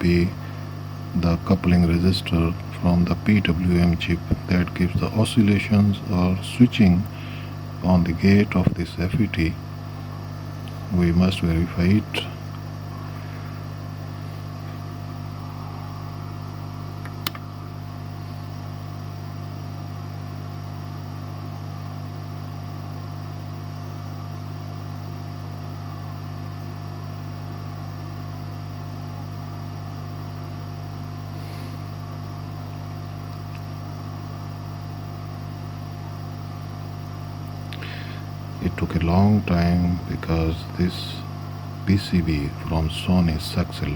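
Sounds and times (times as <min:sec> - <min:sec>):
hot air station fan whirring: 0:00.0 - 0:43.9
sharp click: 0:17.0 - 0:17.5.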